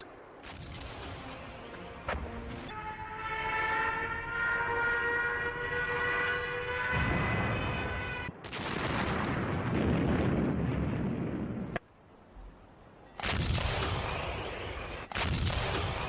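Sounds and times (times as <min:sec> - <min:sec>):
gunfire and explosions: 0:00.0 - 0:03.4, 0:06.7 - 0:11.8, 0:13.2 - 0:16.0
train whistle: 0:02.7 - 0:08.3.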